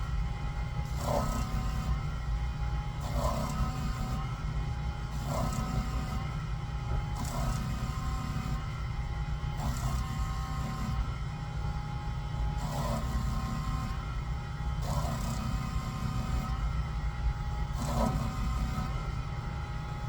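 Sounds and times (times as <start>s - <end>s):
sharpening machine motor hum: 0.8s - 2.1s.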